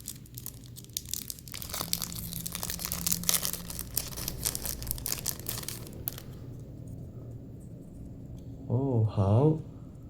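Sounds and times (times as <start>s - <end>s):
plastic packet crinkling: 0.0s - 6.6s.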